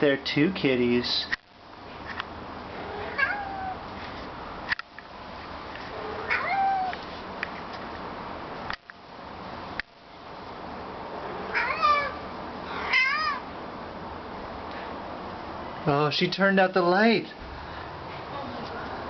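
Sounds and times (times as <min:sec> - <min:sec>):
cat meowing: 0:02.8 - 0:03.8, 0:06.0 - 0:07.0, 0:11.4 - 0:13.5.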